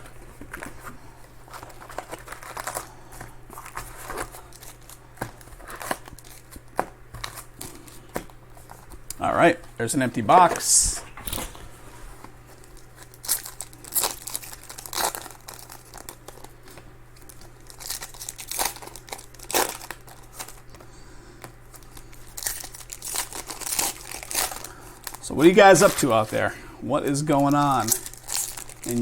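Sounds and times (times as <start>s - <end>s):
plastic and foil packaging crinkling: 0.0s - 9.5s, 10.3s - 20.9s, 21.7s - 29.0s.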